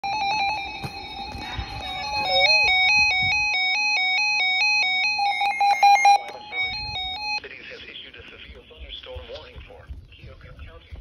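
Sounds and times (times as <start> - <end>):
steady electronic tone: 0.0 - 7.4.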